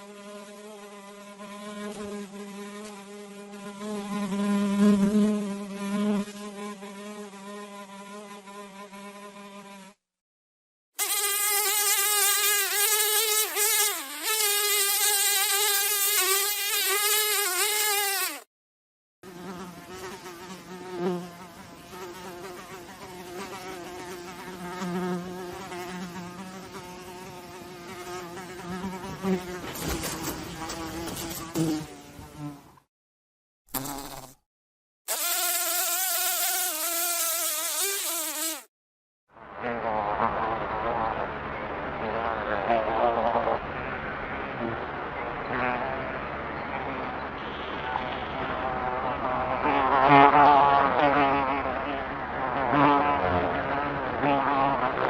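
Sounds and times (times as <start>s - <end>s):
fly wings buzzing: 0.0s - 10.0s, 11.0s - 18.5s, 19.3s - 32.8s, 33.7s - 34.5s, 35.1s - 38.7s.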